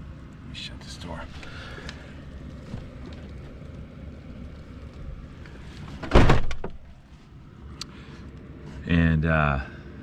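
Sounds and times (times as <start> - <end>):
wind rumbling: 0.0 - 7.8
van door slamming: 5.9 - 6.8.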